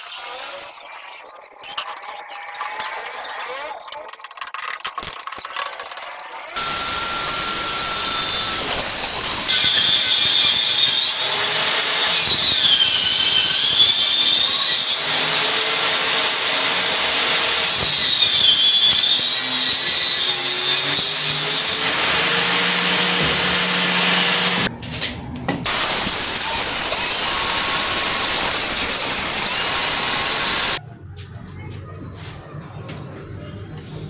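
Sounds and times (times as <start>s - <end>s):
power tool motor whining: 6.6s - 24.7s, 25.7s - 30.8s.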